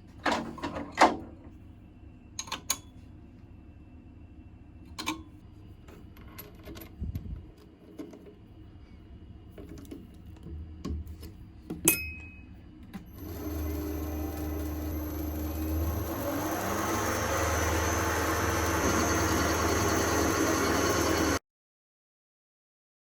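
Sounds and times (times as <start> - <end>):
machine motor humming and whining: 13.1 - 21.4.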